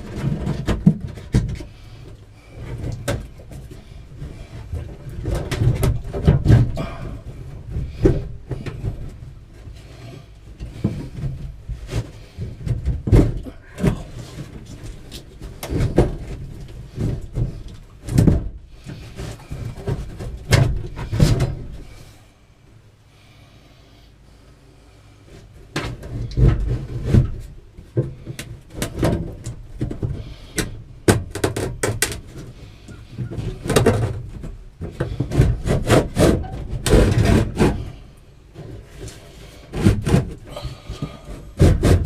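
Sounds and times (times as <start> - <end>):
knocks and thumps: 0.0 - 1.7, 2.5 - 9.7, 10.6 - 22.0, 25.7 - 38.0, 39.6 - 42.0
scraping: 24.3 - 42.0.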